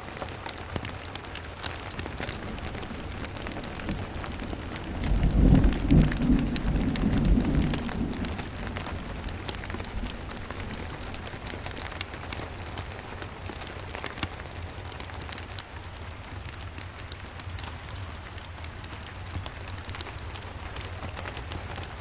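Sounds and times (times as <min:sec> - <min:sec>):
steady rain: 0:00.0 - 0:22.0
sharp ticks: 0:01.3 - 0:21.8
thunder rolling: 0:02.3 - 0:11.9.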